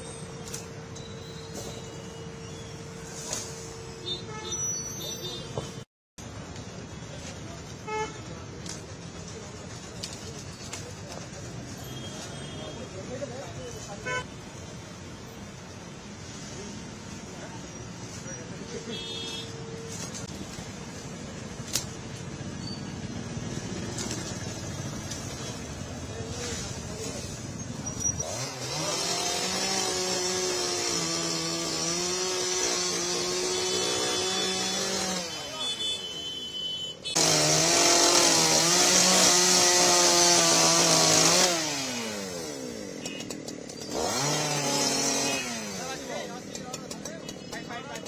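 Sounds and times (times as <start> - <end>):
rumble of passing traffic: 0.0 - 48.0
chainsaw cutting wood: 28.2 - 35.4, 37.1 - 48.0.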